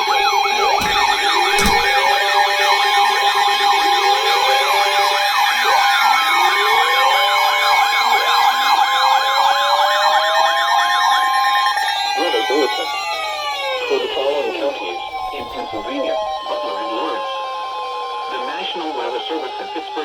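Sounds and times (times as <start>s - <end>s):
wailing siren: 0.0s - 20.0s
yelping siren: 0.0s - 20.0s
steady alert tones: 0.5s - 2.1s.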